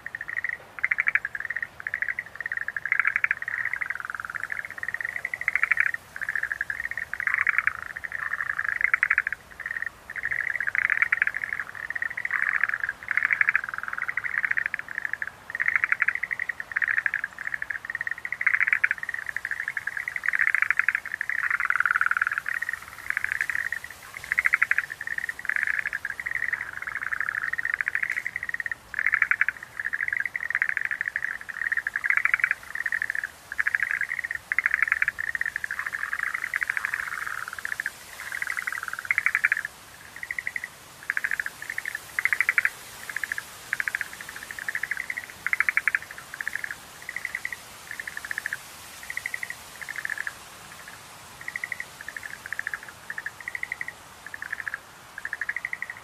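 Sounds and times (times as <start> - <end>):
tree frogs calling in chorus: 0.0 - 56.0.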